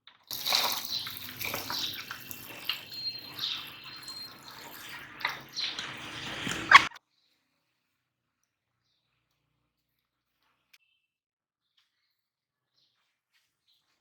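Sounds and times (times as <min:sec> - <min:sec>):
water beads crushed in grinder: 0:00.2 - 0:05.7.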